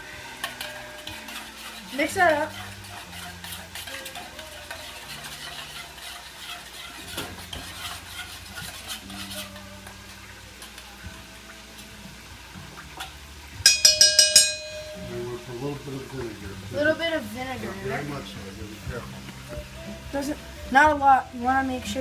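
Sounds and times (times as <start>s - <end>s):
fork whisking in a bowl: 0.4s - 10.9s, 13.7s - 16.1s.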